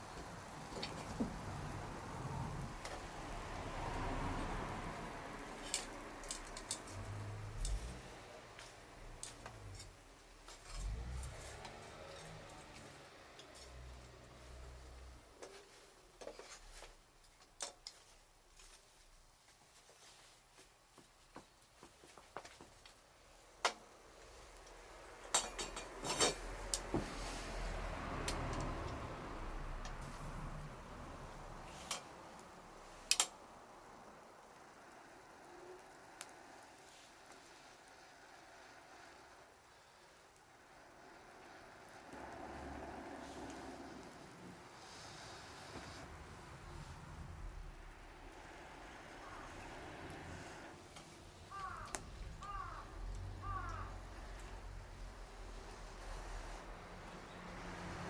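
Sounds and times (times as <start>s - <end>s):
campfire crackling and popping: 22.2s - 58.0s
clinks: 24.6s - 26.9s
low rumbles: 51.4s - 56.6s.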